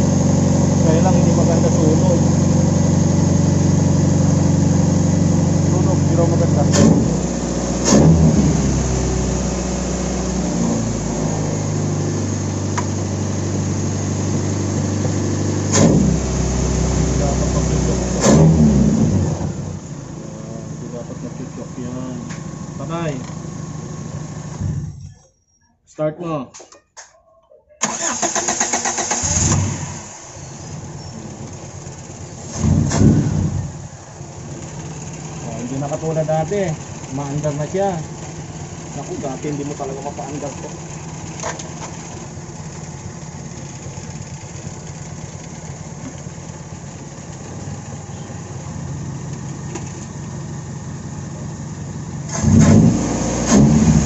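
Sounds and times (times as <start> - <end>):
car engine idling: 0.0 - 25.2, 27.8 - 54.0
car starter cranking: 27.8 - 31.0.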